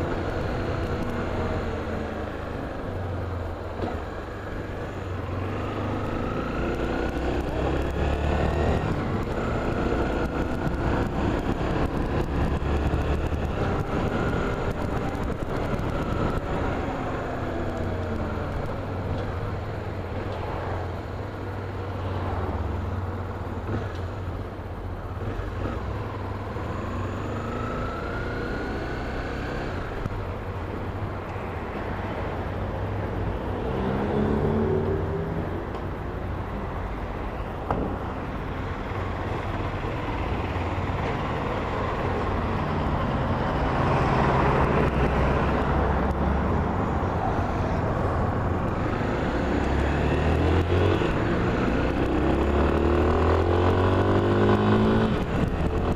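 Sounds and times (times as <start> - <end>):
road noise: 0.0 - 55.9.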